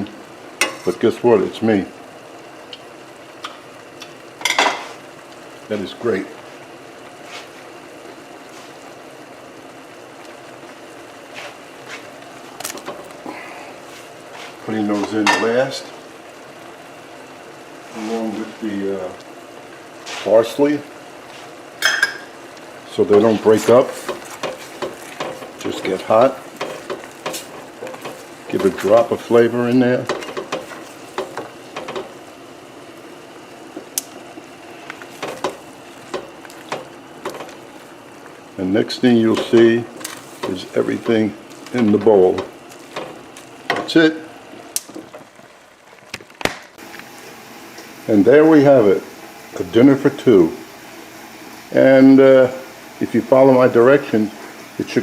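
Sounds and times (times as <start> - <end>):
food sizzling in a pan: 0.0 - 55.0
stirring clicks: 12.1 - 13.2, 22.5 - 47.1.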